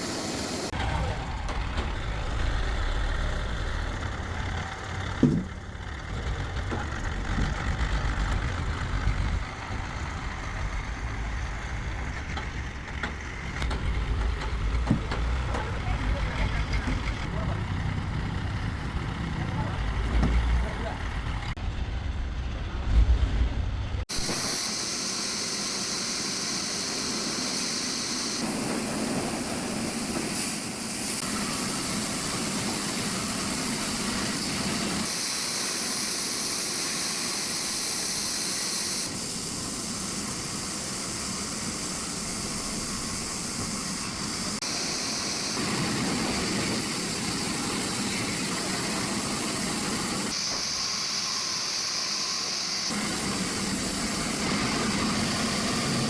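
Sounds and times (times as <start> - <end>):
low rumble: 21.0 - 24.1.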